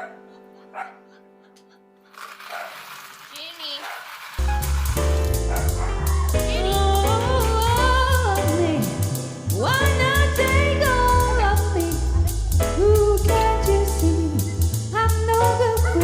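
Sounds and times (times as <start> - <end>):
heavy bass beat and drums: 4.4 - 16.0
song with singing voice: 5.7 - 16.0.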